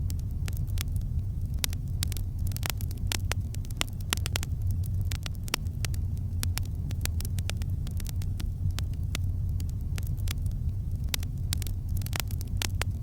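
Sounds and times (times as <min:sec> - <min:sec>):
campfire crackling: 0:00.0 - 0:13.0
low fire rumble: 0:00.0 - 0:13.0.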